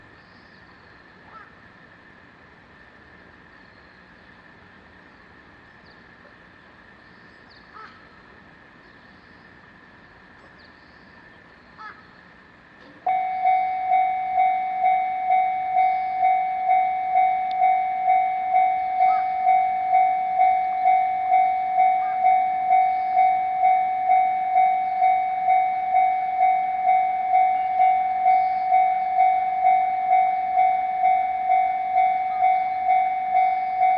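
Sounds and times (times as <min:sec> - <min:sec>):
level crossing warning bell: 0:13.1 - 0:33.9.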